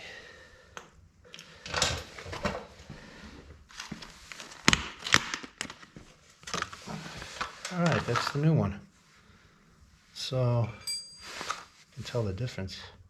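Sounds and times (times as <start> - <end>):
rustling: 5.5 - 8.4.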